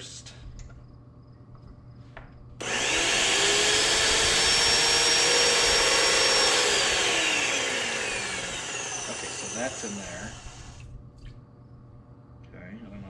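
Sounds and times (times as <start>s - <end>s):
paint sprayer motor and pump whining: 2.6s - 10.9s.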